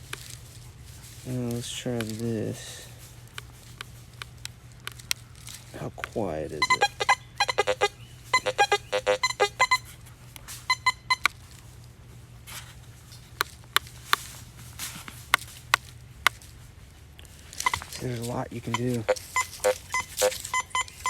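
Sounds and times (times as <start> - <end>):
metal detector beeps: 6.5 - 10.0, 10.6 - 11.4, 17.6 - 18.0, 18.6 - 21.0.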